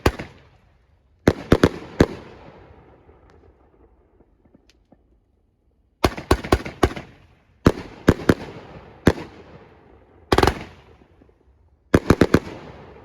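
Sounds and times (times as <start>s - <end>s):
fireworks bangs: 1.3s - 5.0s.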